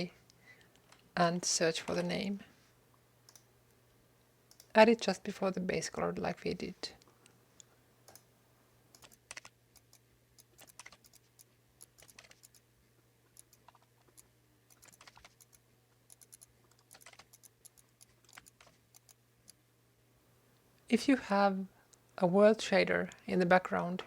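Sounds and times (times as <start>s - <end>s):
low steady hum: 0.0s - 24.0s
computer keyboard typing: 8.9s - 12.6s, 13.4s - 19.6s.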